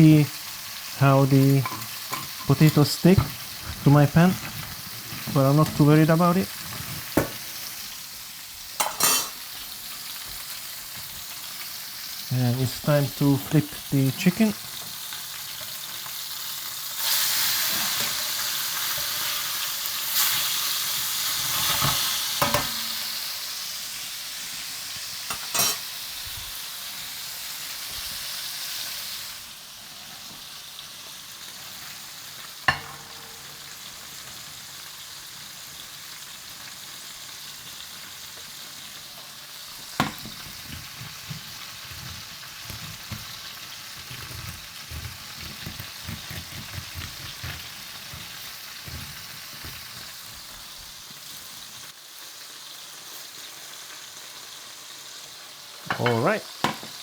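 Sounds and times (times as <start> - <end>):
chicken sizzling in a frying pan: 0.0 - 57.0
utensil knocking against pan: 32.7 - 33.5, 40.0 - 40.4, 55.9 - 57.0.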